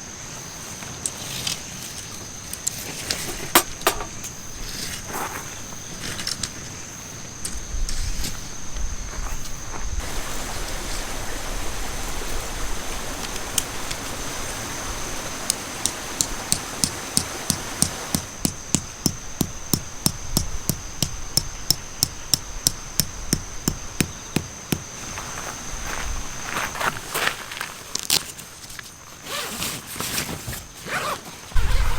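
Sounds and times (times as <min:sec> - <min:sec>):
steady hiss: 0:00.0 - 0:29.2
hammer knocking tent peg: 0:15.8 - 0:25.0.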